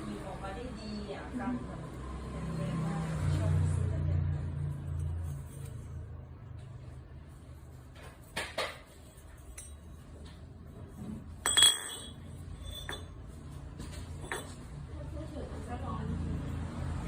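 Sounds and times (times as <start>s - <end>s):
hard objects clinking together: 11.4s - 13.2s.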